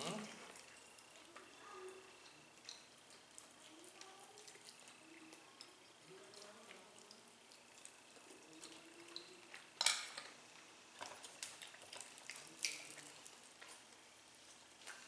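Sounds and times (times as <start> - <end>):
dishes and utensils clinking: 9.8 - 10.4.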